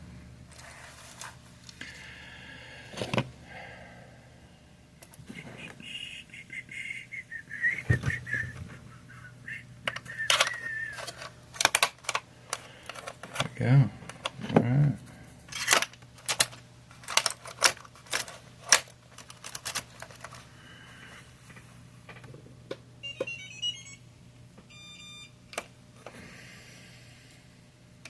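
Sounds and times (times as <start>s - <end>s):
low steady hum: 0.0s - 28.0s
small parts and tools clicking: 9.9s - 13.5s, 15.5s - 20.4s.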